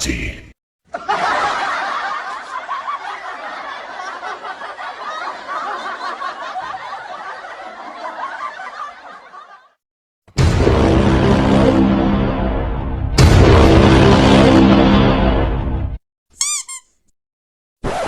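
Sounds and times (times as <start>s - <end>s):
group of people laughing: 0.9s - 9.8s.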